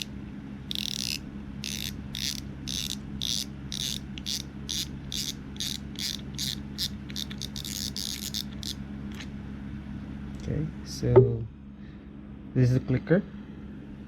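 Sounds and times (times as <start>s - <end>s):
fishing reel clicking: 0.7s - 8.8s.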